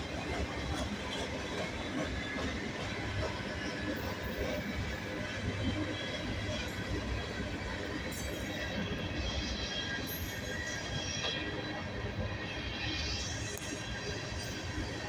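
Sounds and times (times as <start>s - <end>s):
freight train rumbling past: 0.0s - 15.0s
faint high wheel squeal: 8.0s - 15.0s.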